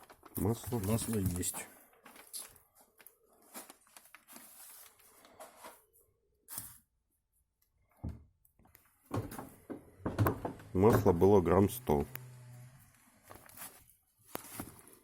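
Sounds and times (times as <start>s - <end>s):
sharp knocks: 9.1s - 11.3s.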